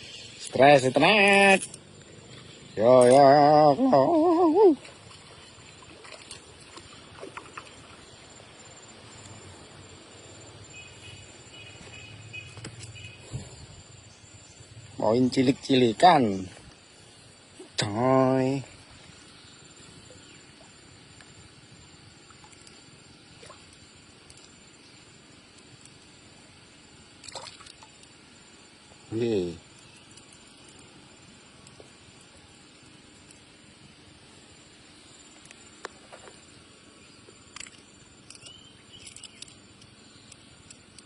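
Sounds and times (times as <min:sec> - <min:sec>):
faint water noise: 0:00.0 - 0:41.0
insects shrilling: 0:00.0 - 0:41.0
sharp clicks and short chirps: 0:37.5 - 0:41.0.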